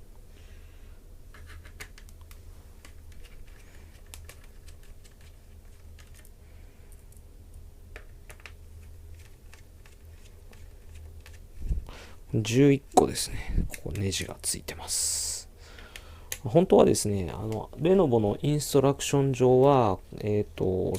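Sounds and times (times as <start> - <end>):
steady low hum: 0.0 - 20.9.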